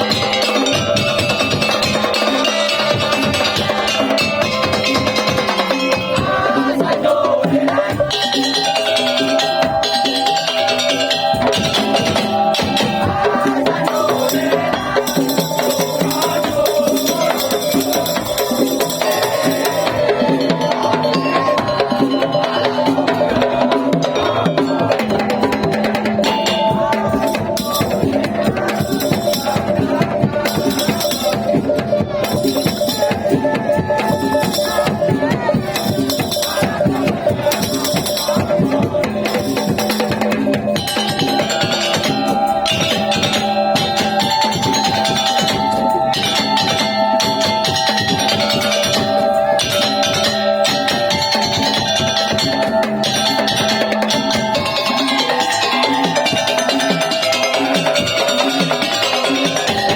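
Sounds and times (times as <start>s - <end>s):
drums and slit drums rhythm: 0.0s - 59.9s
held melodic notes: 0.0s - 59.9s
jingling cymbals: 0.0s - 59.9s
steady held tone: 40.8s - 59.9s.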